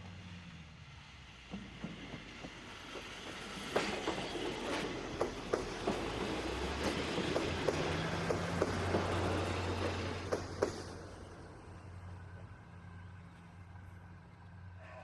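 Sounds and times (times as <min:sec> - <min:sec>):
wheels clicking over rail joints: 0:01.5 - 0:12.6.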